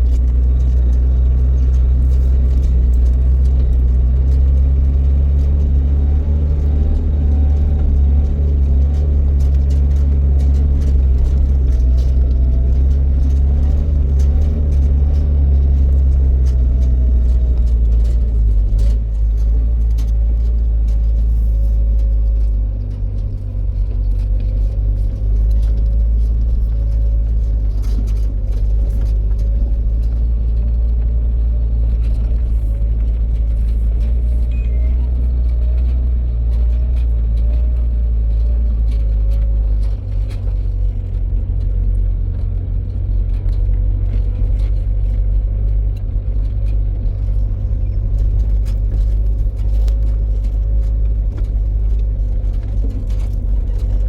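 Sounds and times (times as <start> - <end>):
vehicle engine rumbling: 0.0 - 54.0.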